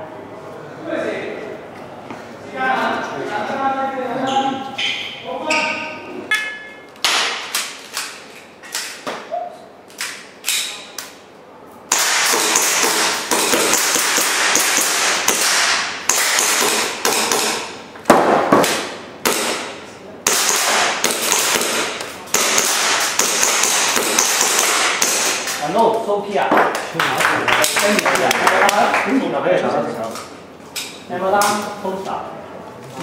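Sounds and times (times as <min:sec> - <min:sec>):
dense noisy background: 0:00.0 - 0:33.0
airsoft pistol shots: 0:11.9 - 0:25.5.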